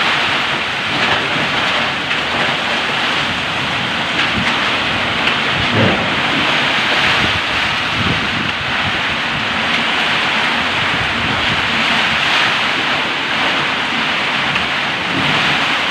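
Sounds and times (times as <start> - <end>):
heavy rain hissing: 0.0 - 15.9
wind gusting: 0.0 - 15.9.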